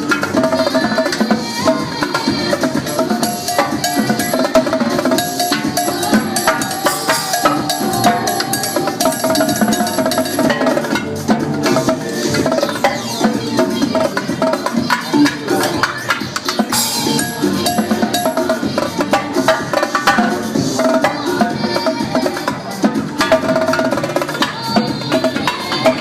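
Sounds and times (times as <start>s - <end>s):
electronic dance music: 0.0s - 26.0s
fast live drumming: 0.0s - 26.0s.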